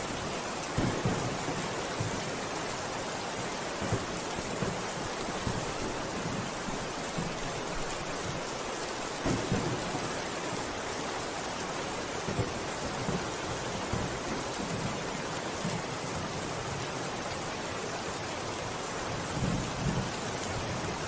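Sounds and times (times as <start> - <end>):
steady rain hissing: 0.0 - 21.0
thunder rumbling: 0.8 - 2.2, 9.2 - 10.3.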